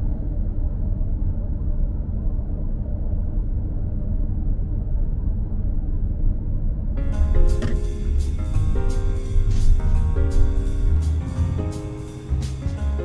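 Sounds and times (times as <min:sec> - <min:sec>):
car driving rumble: 0:07.0 - 0:12.9
guitar music: 0:07.0 - 0:13.0.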